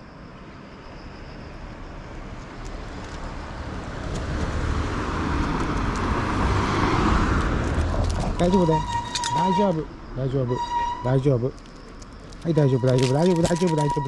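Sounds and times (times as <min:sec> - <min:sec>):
car engine approaching: 0:01.6 - 0:12.6.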